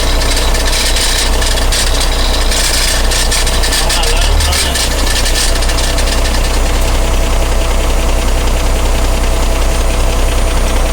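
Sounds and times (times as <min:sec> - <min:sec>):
thin steady whine: 0:00.0 - 0:07.2
rapid mechanical clatter: 0:00.0 - 0:09.2
vehicle engine running: 0:00.0 - 0:10.9.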